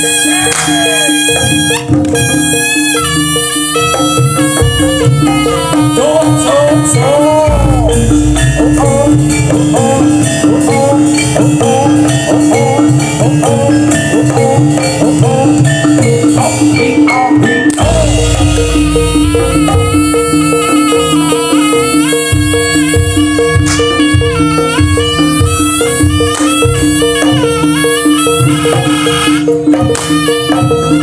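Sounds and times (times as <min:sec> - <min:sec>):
drums and percussion: 0:00.0 - 0:31.0
wavering melody line: 0:00.0 - 0:31.0
steady repeating note: 0:04.8 - 0:12.0, 0:17.7 - 0:27.8
deep bass: 0:07.5 - 0:10.2, 0:17.8 - 0:20.7.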